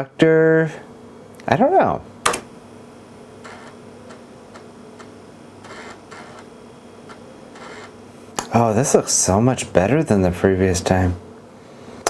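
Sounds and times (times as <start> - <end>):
faint steady hum: 0.0 - 12.0
floppy drive clicking: 2.2 - 2.6.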